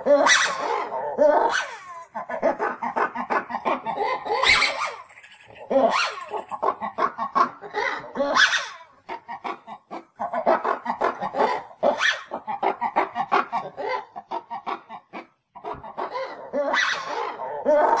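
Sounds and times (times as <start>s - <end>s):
lemurs calling: 0.0s - 18.0s.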